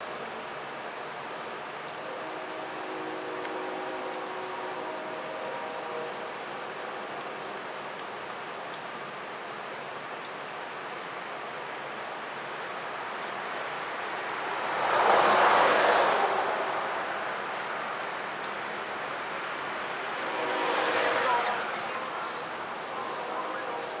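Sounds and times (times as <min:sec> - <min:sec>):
background hiss: 0:00.0 - 0:24.0
high-pitched insect drone: 0:00.0 - 0:24.0
vehicle passing by: 0:12.8 - 0:24.0.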